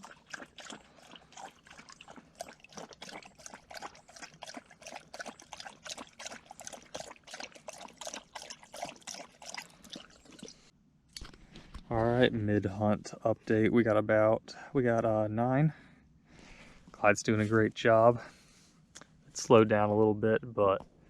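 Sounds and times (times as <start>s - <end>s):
dog lapping water: 0.0s - 10.7s.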